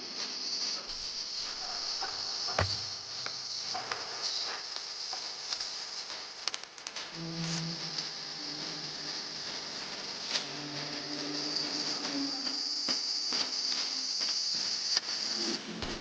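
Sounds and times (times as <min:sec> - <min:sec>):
insect chorus chirring: 0:00.9 - 0:04.6.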